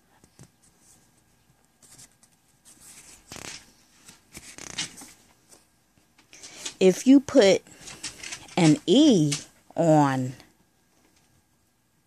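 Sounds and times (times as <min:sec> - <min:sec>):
rustling and scraping handling noises: 0:00.0 - 0:06.9, 0:07.7 - 0:09.6.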